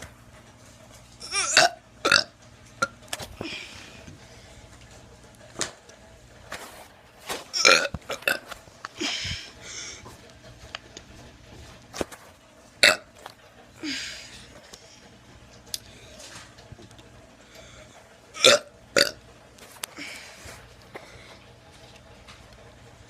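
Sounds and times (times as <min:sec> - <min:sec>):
person burping: 0:01.2 - 0:03.0, 0:07.5 - 0:08.5, 0:12.8 - 0:13.1, 0:18.4 - 0:19.2.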